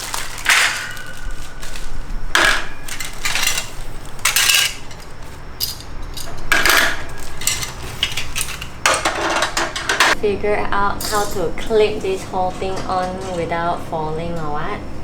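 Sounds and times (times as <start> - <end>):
metal cage parts clinking: 0.0 - 10.2, 11.0 - 11.8.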